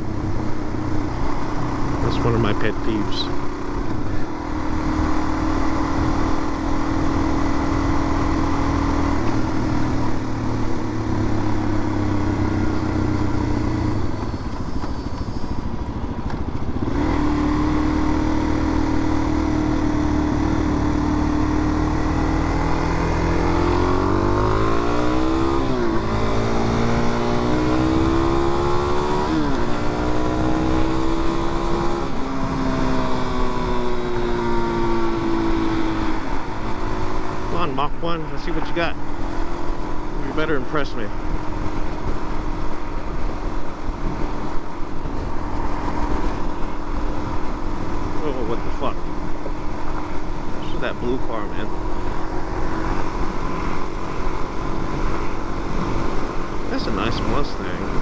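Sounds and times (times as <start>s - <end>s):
motorcycle engine accelerating: 0.0s - 58.0s
wind noise: 41.0s - 50.7s, 51.7s - 58.0s.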